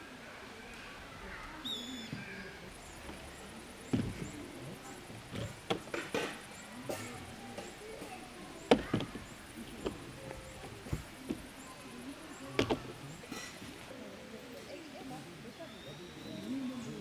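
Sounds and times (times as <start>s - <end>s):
objects being handled: 2.1s - 13.9s.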